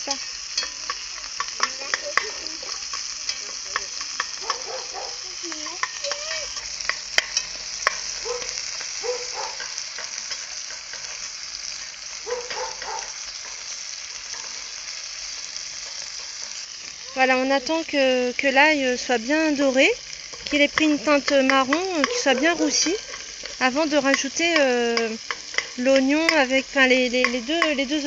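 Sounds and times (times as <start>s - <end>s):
meat sizzling in oil: 0.0s - 28.0s
sharp crackling clicks: 0.1s - 11.2s, 20.0s - 22.1s.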